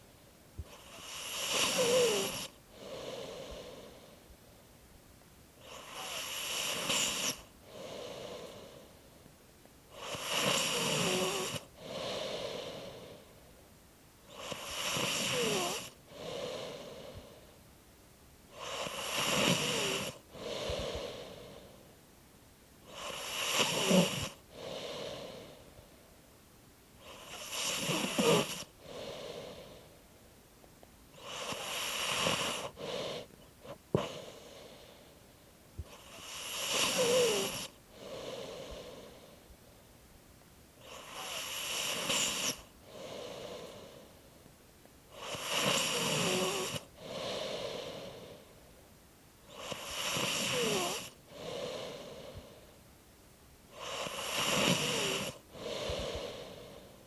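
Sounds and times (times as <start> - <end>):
person snoring: 0.6 - 4.2, 5.6 - 9.0, 9.9 - 13.2, 14.3 - 17.4, 18.5 - 21.8, 22.8 - 25.7, 27.0 - 29.8, 31.2 - 35.0, 35.8 - 39.4, 40.8 - 44.2, 45.1 - 48.5, 49.5 - 52.6, 53.7 - 57.0.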